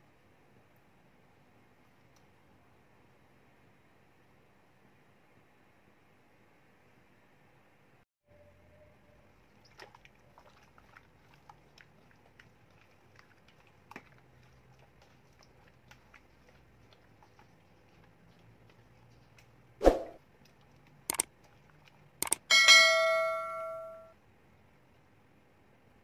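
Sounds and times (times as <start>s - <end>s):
small clicks: 21.1s - 21.3s, 22.2s - 22.4s.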